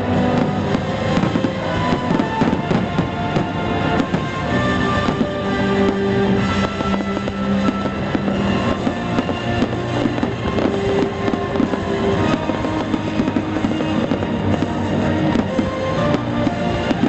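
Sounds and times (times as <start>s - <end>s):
fireworks popping and crackling: 0.0s - 17.0s
music: 0.0s - 17.0s.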